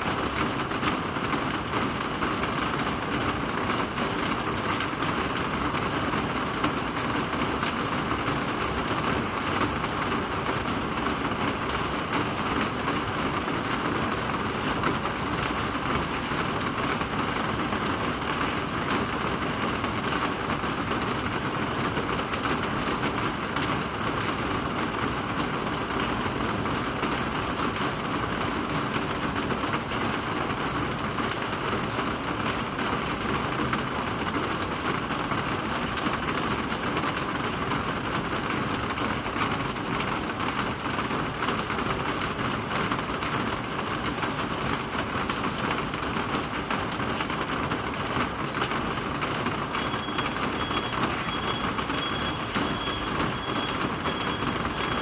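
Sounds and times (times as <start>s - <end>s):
steady rain falling: 0.0s - 55.0s
faint high beeping: 49.8s - 55.0s.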